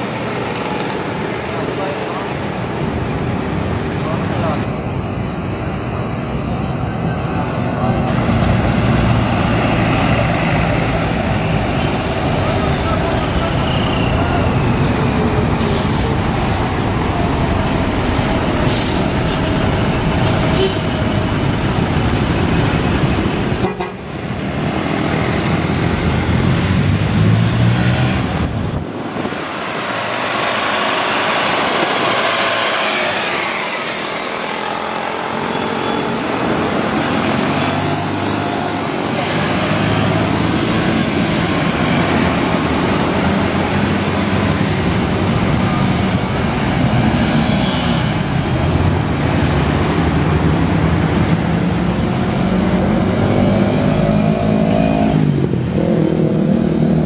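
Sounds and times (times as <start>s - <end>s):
buses passing: 0.0s - 57.0s
vehicle horns tooting: 23.6s - 24.0s.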